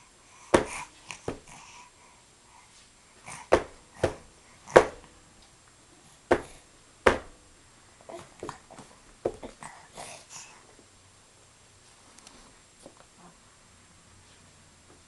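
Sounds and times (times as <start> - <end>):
sharp knocks: 0.6 - 1.5, 3.5 - 5.0, 6.3 - 7.4.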